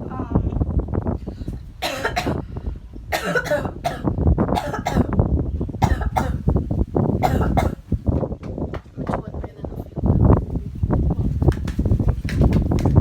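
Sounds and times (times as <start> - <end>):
person coughing: 1.8 - 2.4, 3.1 - 5.2, 5.8 - 6.4, 7.2 - 7.8.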